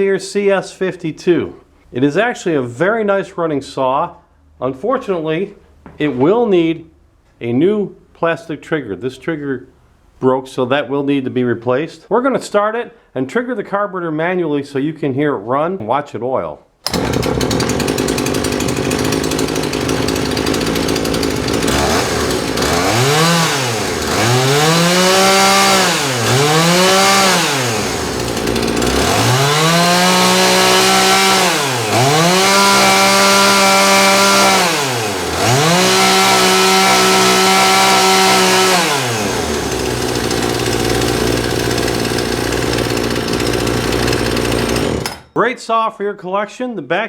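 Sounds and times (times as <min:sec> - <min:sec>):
chainsaw idling and revving: 0:16.9 - 0:45.3.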